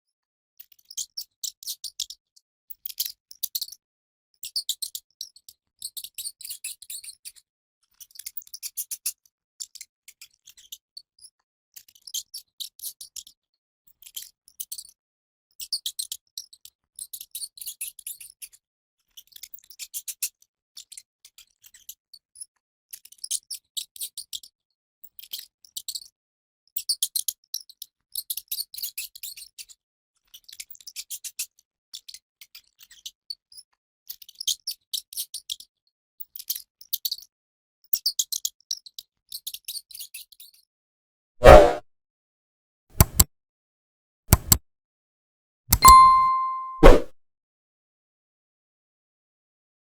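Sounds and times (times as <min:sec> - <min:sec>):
mouse clicking chatter: 0:43.0 - 0:43.3, 0:44.3 - 0:44.6.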